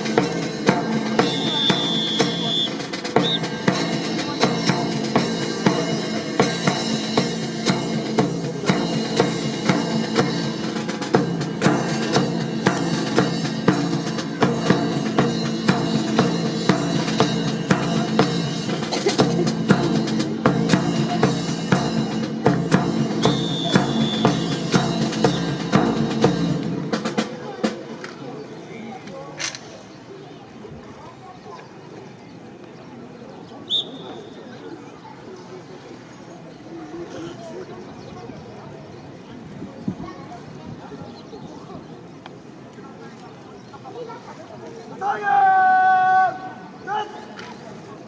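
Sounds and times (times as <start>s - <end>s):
bass drum beat: 0.0s - 27.0s.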